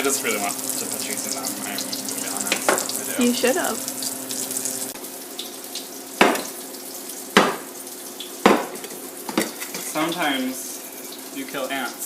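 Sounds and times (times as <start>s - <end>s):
hot dogs sizzling in pan: 0.0s - 12.0s
sharp knocks: 6.2s - 6.5s.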